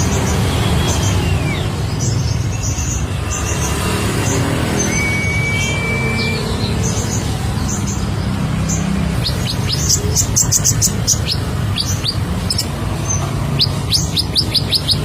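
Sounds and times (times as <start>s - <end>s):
bird chirps: 0.0s - 15.0s
thin whistled note: 4.8s - 6.5s.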